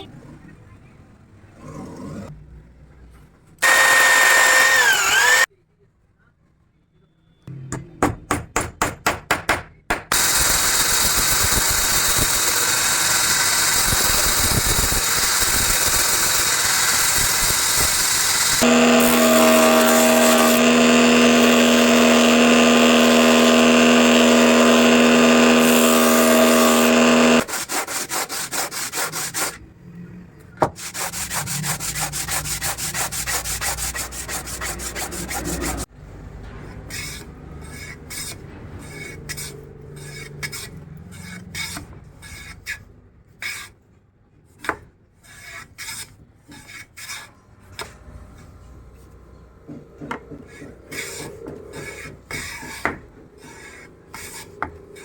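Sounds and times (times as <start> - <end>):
electric power tool motor: 3.6 - 5.5, 10.1 - 27.5
rasping and rubbing on wood: 11.6 - 29.6, 30.8 - 35.9, 50.3 - 55.0.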